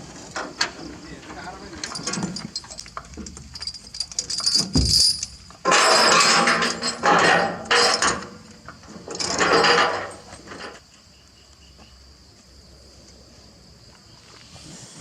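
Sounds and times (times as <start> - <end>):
metal clanking and rattling: 0.3 - 10.8.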